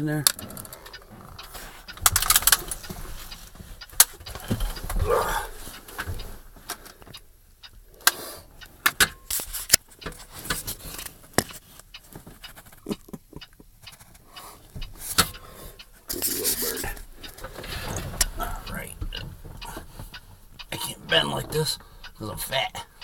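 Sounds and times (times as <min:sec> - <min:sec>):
rustling: 0:00.4 - 0:07.2.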